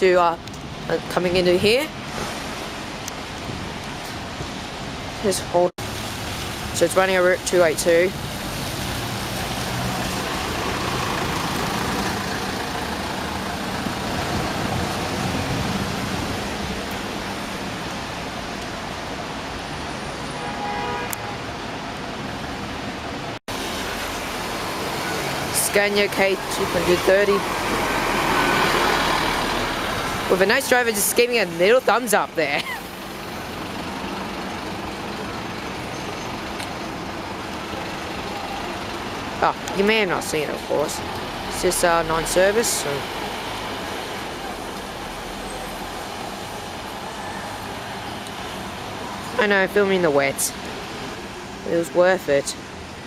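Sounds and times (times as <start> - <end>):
traffic: 0.0 - 53.0
rain hissing: 2.0 - 20.0, 23.4 - 31.7, 32.6 - 49.4
bus engine running: 10.0 - 16.8, 32.6 - 46.9.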